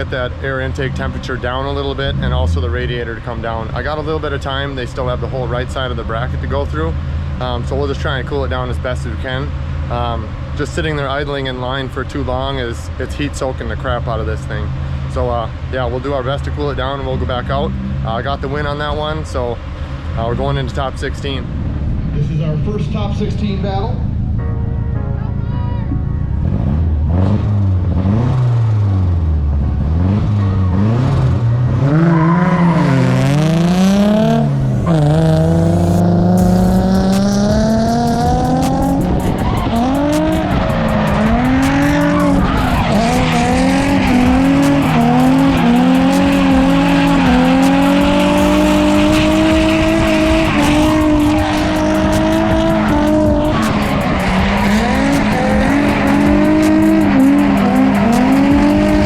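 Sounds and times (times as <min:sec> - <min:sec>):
car engine revving: 0:00.0 - 0:24.4, 0:26.2 - 0:59.0
tire squeal: 0:29.9 - 0:59.0.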